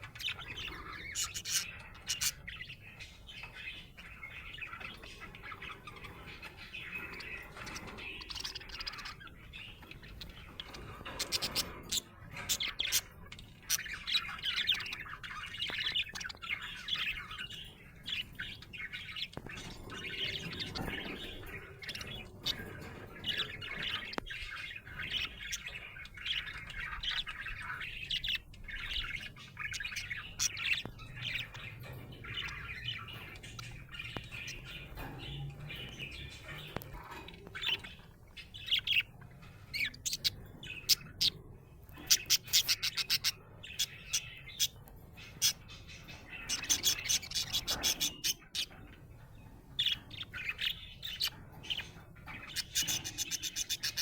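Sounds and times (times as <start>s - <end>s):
budgerigar chirping and chattering: 0.0s - 54.0s.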